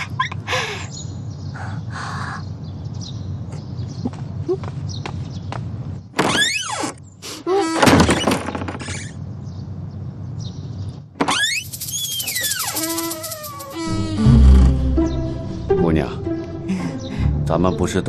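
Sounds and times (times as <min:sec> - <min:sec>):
door creaking with squeals: 0:06.2 - 0:09.2, 0:11.2 - 0:15.1.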